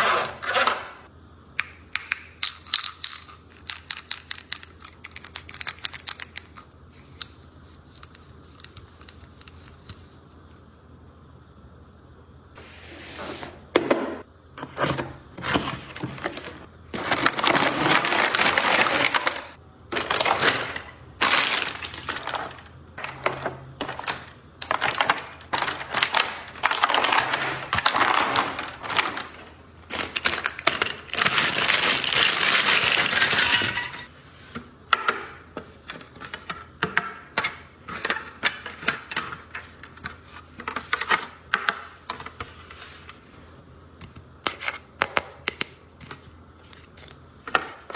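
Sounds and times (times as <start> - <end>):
plastic crinkling: 17.0 - 22.6, 24.7 - 33.9.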